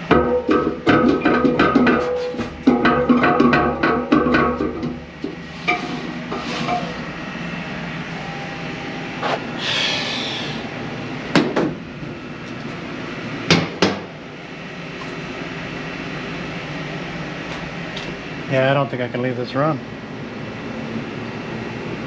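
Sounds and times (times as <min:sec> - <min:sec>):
blower mechanical hum: 0:00.0 - 0:22.0.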